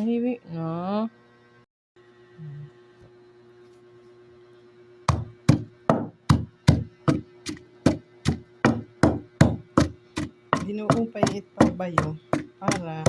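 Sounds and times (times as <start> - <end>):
pestle pounding in wooden mortar: 5.1 - 13.0.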